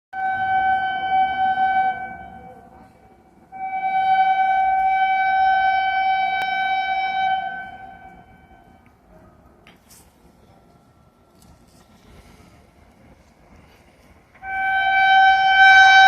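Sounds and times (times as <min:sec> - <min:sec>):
locomotive horn blasts: 0:00.2 - 0:02.8, 0:03.5 - 0:08.8, 0:14.4 - 0:16.0.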